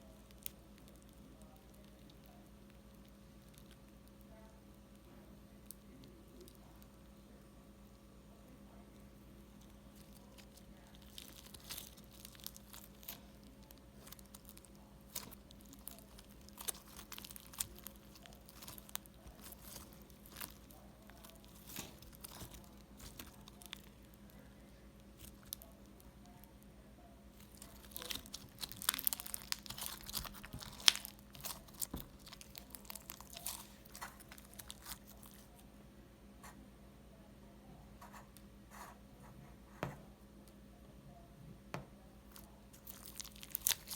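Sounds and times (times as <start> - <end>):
crunchy slime crackling: 0.0 - 7.2, 9.5 - 35.7, 42.3 - 43.9.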